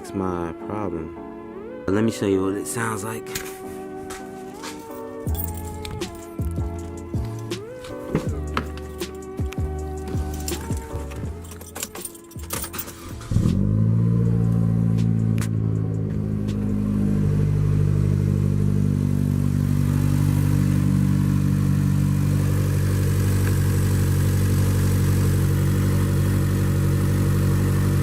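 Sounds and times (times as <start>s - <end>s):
car engine rough idling: 5.3s - 11.8s, 12.4s - 28.0s.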